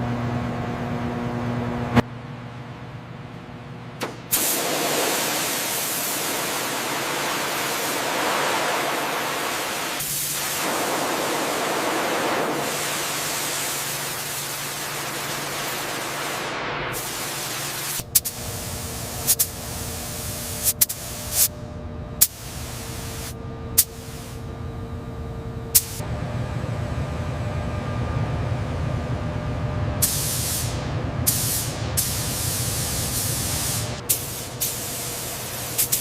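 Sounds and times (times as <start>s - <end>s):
loud steady hiss: 4.3s - 21.6s, 22.2s - 24.4s, 25.7s - 26.0s, 30.0s - 36.0s
low hum: 18.0s - 34.1s.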